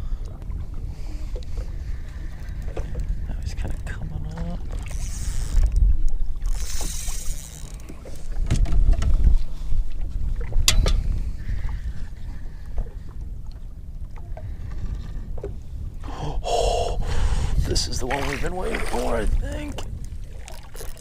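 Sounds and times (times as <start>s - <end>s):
wind buffeting microphone: 0.0s - 20.8s
fishing gear clicks and knocks: 4.7s - 9.4s, 20.6s - 21.0s.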